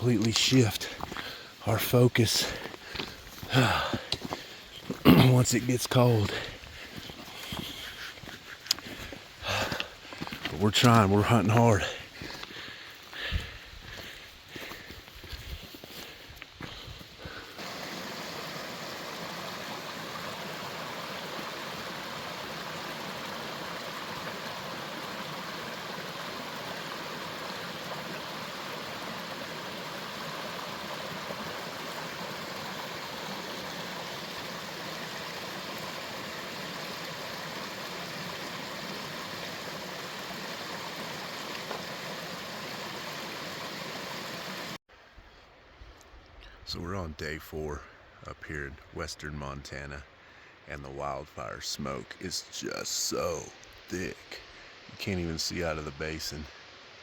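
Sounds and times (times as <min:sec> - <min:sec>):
stream water rushing: 0:00.0 - 0:13.0, 0:17.5 - 0:44.8.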